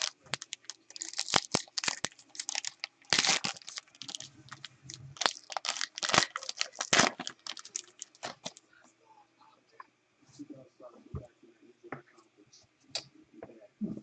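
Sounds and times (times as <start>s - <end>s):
foil wrapper crinkling and tearing: 0.0s - 8.6s.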